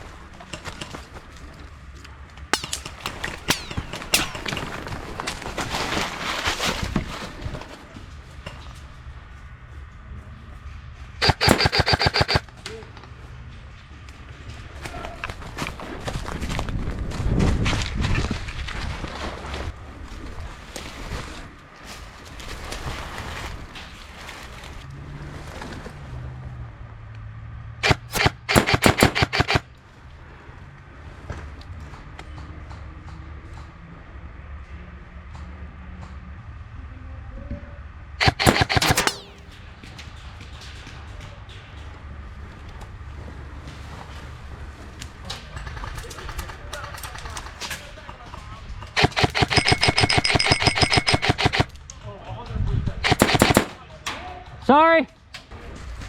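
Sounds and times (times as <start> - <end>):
airsoft gun firing: 2.6 - 5.1, 11.2 - 12.4, 27.8 - 29.6, 38.2 - 39.5, 49.0 - 51.7, 53.0 - 53.9
sharp cracks: 2.6 - 5.2, 11.2 - 12.4, 27.8 - 29.6, 38.2 - 39.5, 49.0 - 51.7, 53.0 - 53.9.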